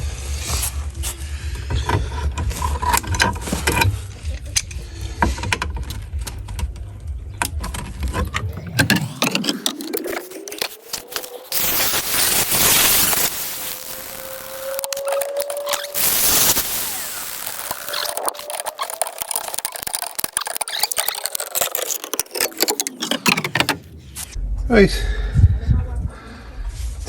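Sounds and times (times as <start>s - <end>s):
grinder grinding steel: 7.4s - 23.6s
angle grinder whine: 8.2s - 21.2s.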